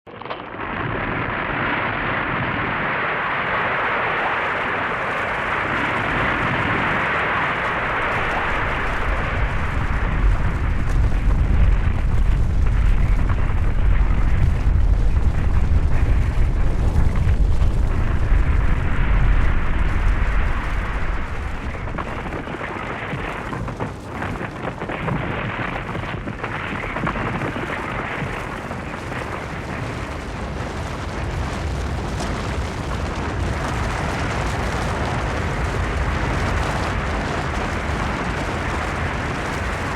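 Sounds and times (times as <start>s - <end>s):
deep rumble: 0.1s - 39.9s
hissing rush of sliding snow: 2.6s - 23.0s.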